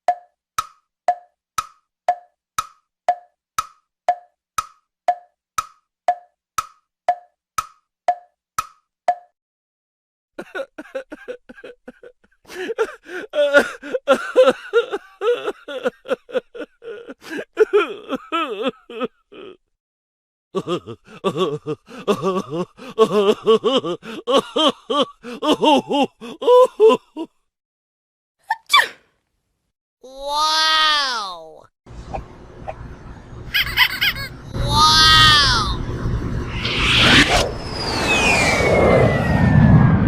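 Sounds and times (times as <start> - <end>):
hollow wood-block knocks: 0.0 - 9.3
laughing sound effect: 10.4 - 19.6, 20.6 - 27.3, 33.5 - 35.8.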